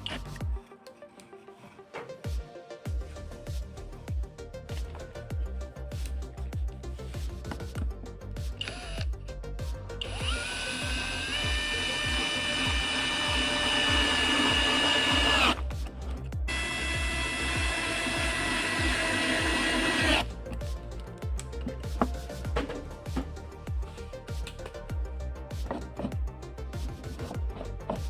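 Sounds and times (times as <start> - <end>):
electric drill whining: 8.6 - 9.1, 10.0 - 15.6, 16.5 - 20.3.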